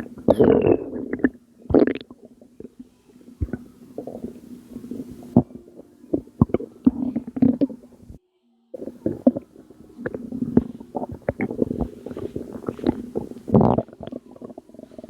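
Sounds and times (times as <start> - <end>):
belly gurgling: 10.0 - 15.0.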